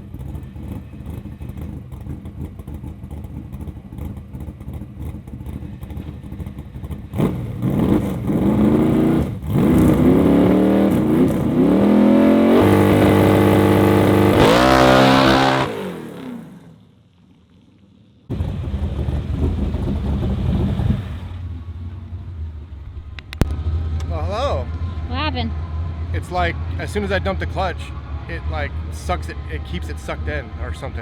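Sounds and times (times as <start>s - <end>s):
engine rumble: 0.0s - 31.0s
car engine revving hard: 7.1s - 16.7s.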